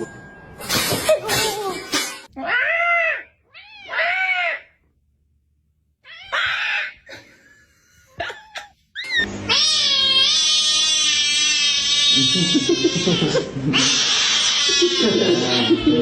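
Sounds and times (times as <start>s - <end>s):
cat meowing: 2.4s - 4.7s, 6.0s - 6.9s, 9.0s - 13.2s.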